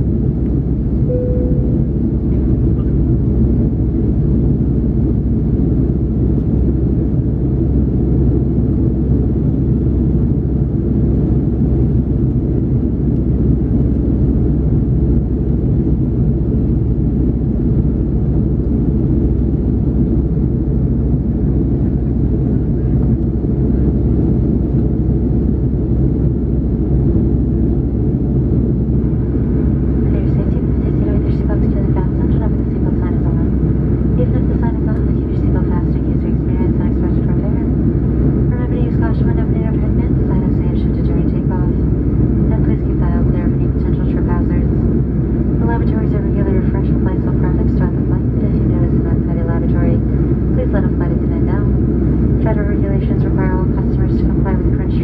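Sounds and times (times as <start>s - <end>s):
airplane cabin rumble: 0.0s - 55.0s
short tone: 1.1s - 2.1s.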